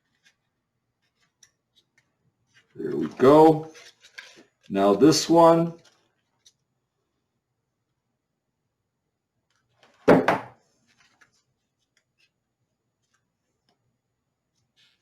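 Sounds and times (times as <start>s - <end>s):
sharp knock on work surface: 10.1s - 10.5s.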